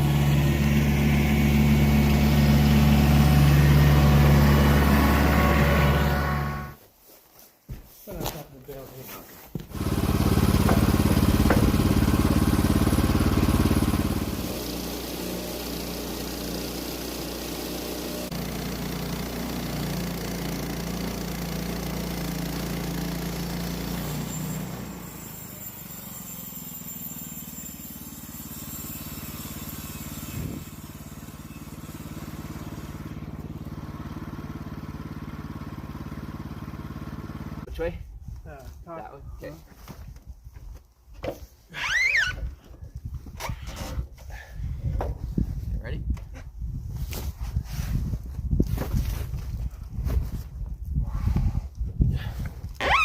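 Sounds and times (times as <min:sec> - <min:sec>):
engine running and idling: 0:00.0 - 0:06.8, 0:09.7 - 0:37.7.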